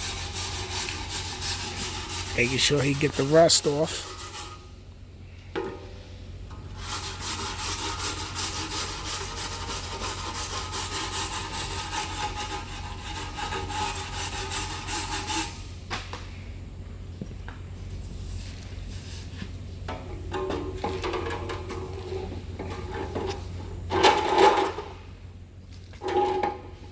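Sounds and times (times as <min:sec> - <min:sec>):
rough scraping of metal: 0:00.0 - 0:04.7, 0:20.3 - 0:25.0, 0:25.9 - 0:26.9.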